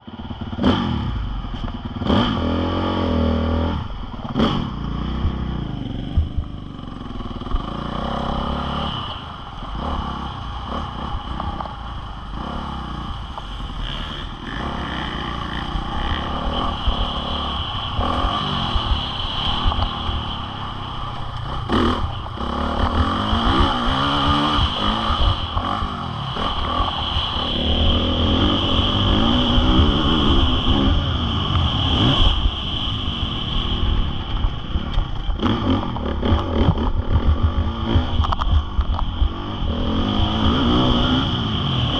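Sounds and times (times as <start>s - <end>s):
motocross bike engine revving: 0.1s - 41.9s.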